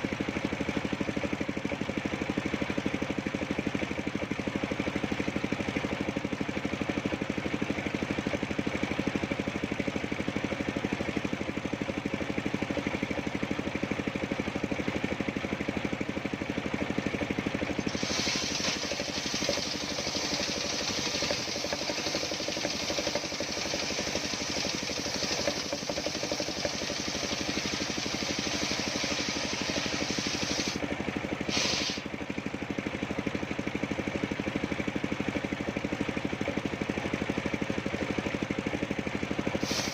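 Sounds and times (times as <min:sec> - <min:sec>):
saw engine running: 0:16.8 - 0:32.4, 0:39.4 - 0:39.9
saw blade cutting wood: 0:17.8 - 0:30.8, 0:31.5 - 0:32.1.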